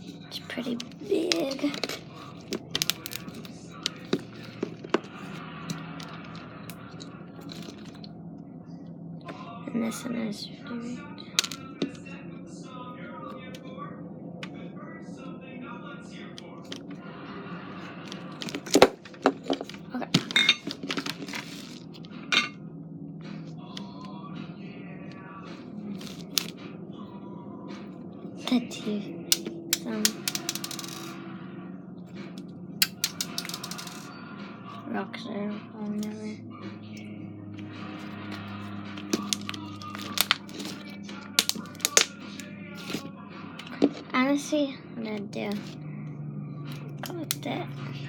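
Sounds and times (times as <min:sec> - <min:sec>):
low background hum: 0:00.0 - 0:48.0
plastic containers clicking and knocking: 0:01.4 - 0:06.4, 0:41.4 - 0:42.1.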